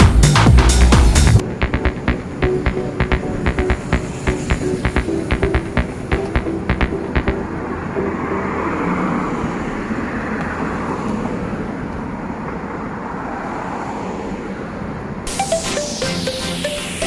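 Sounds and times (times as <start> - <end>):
traffic hum: 0.0 - 17.0
passing vehicle: 1.4 - 16.0.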